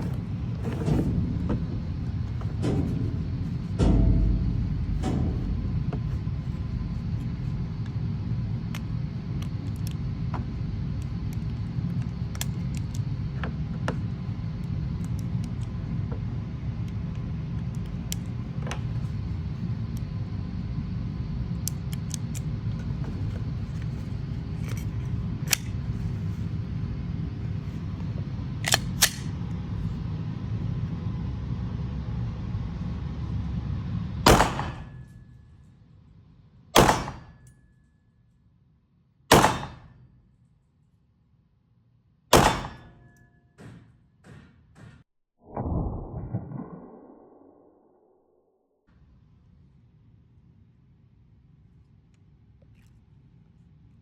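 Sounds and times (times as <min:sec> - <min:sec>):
low rumble: 0:00.0 - 0:10.2, 0:45.4 - 0:48.7
pistol shots: 0:34.3 - 0:35.0, 0:36.8 - 0:37.4, 0:39.3 - 0:39.9, 0:42.3 - 0:42.9.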